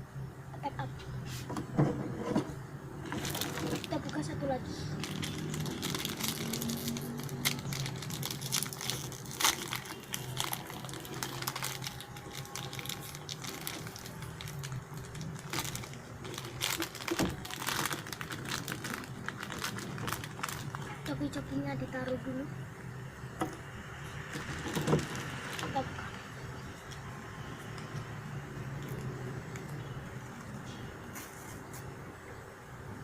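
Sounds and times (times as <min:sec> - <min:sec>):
packaging crinkling and tearing: 0:03.0 - 0:04.3, 0:04.9 - 0:21.2, 0:24.2 - 0:26.2.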